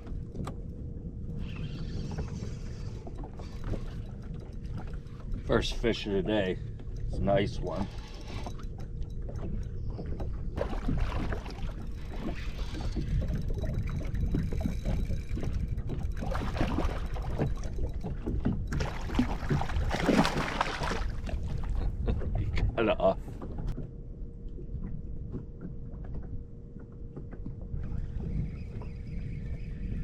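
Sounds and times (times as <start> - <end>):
wind rumble on microphone: 0.0 - 30.0
water splashing against boat hull: 9.3 - 22.4.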